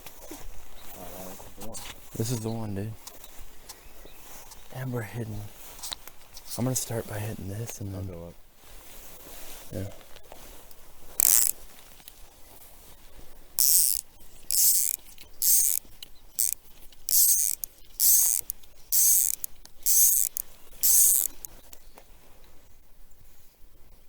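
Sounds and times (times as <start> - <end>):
fishing reel drag rattling: 11.2 - 11.6, 13.6 - 21.5.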